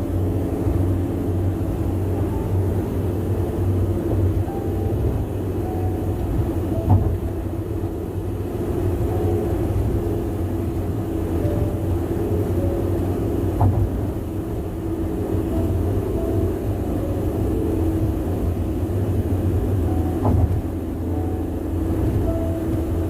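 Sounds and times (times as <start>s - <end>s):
car tyre roar: 0.0s - 23.0s.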